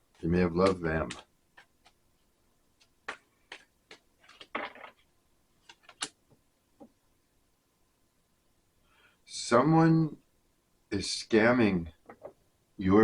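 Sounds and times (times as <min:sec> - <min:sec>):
cards tapping and clicking: 0:00.2 - 0:02.0, 0:02.8 - 0:05.0, 0:05.6 - 0:06.2
cards rustling: 0:00.2 - 0:06.2.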